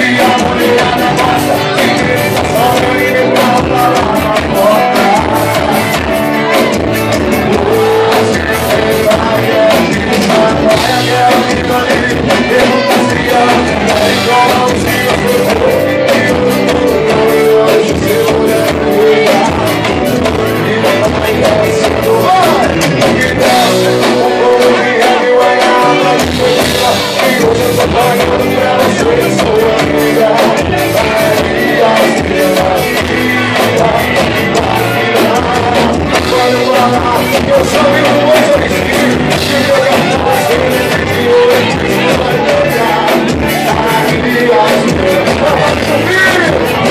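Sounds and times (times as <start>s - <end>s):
live band playing country music: 0.0s - 46.9s.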